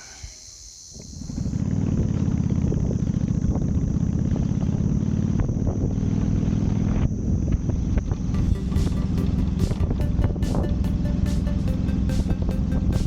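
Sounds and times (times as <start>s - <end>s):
motorcycle engine throbbing: 1.0s - 13.0s.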